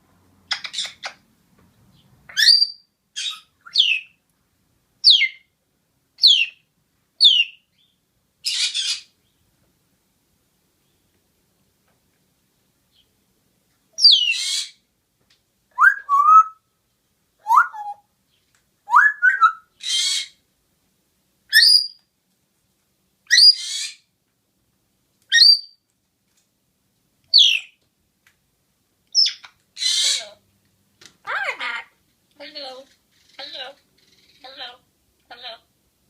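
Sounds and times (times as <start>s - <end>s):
bird squawks and chirps: 2.3s - 4.1s, 8.4s - 9.2s, 14.0s - 14.8s, 19.0s - 20.4s, 23.3s - 24.1s, 25.3s - 25.8s, 27.3s - 27.8s, 29.2s - 30.4s.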